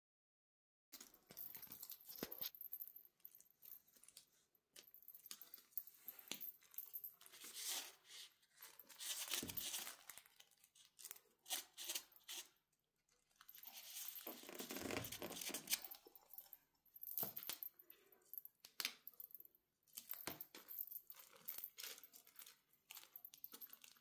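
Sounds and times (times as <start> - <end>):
toy rustling and crinkling: 1.0 - 17.7.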